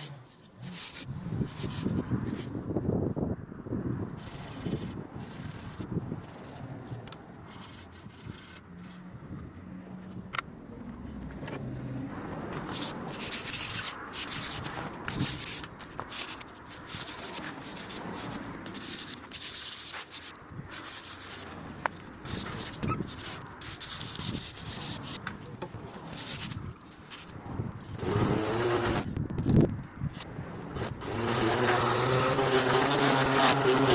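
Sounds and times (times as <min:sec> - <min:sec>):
hand sanding wood: 0:12.3 - 0:29.1, 0:30.2 - 0:33.9.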